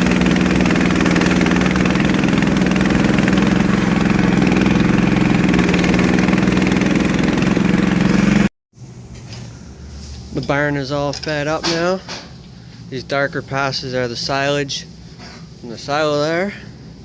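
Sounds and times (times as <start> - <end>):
farm machine engine humming: 0.0 - 8.5.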